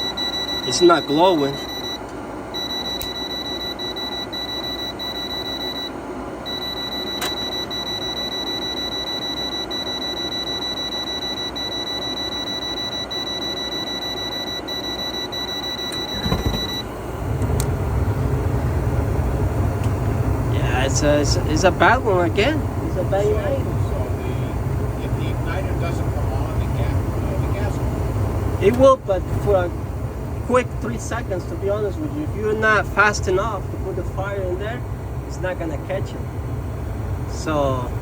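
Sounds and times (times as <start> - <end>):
voltage tester beeping: 0.0 - 5.9, 6.5 - 16.9.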